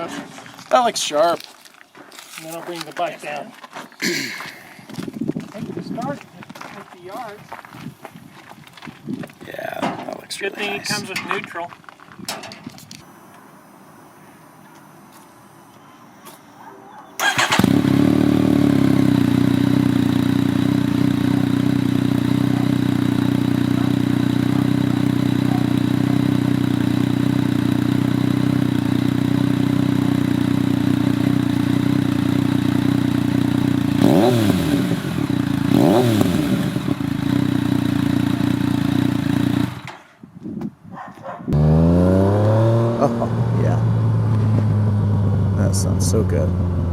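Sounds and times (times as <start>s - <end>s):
motorcycle engine revving: 17.2s - 40.1s, 41.5s - 46.9s
motorcycle engine starting and idling: 17.2s - 40.2s, 41.6s - 46.9s.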